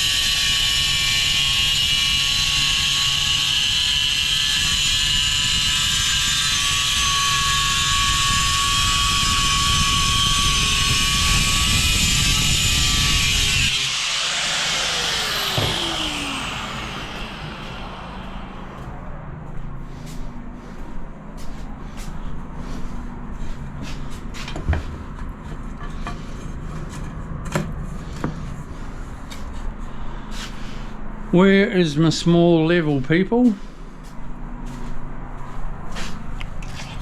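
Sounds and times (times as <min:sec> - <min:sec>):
tile cutter whining: 0:00.0 - 0:19.2.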